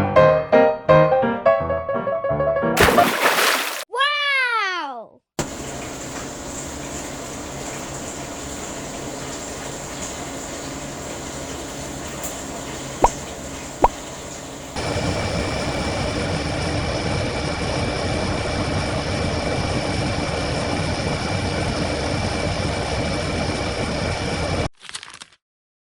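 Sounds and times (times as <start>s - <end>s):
washing machine spin cycle: 5.4s - 24.7s.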